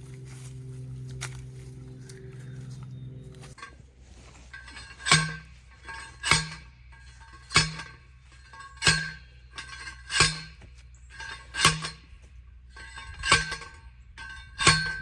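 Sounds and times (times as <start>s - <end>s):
metal-on-metal strikes ringing: 4.5s - 12.2s, 12.8s - 15.0s.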